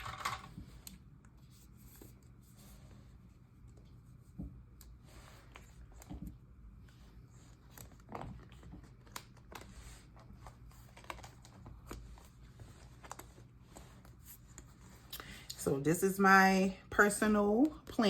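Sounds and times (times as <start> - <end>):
paper pages rustling: 6.9 - 15.1.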